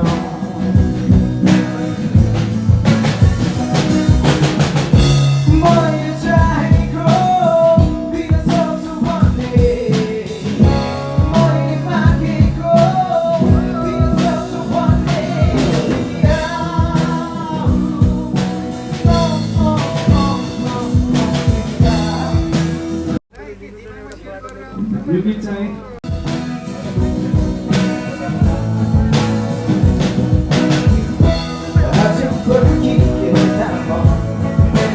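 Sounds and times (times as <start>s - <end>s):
band with drum kit: 0.0s - 23.2s, 26.0s - 34.9s
woman singing: 5.4s - 22.6s, 27.8s - 34.9s.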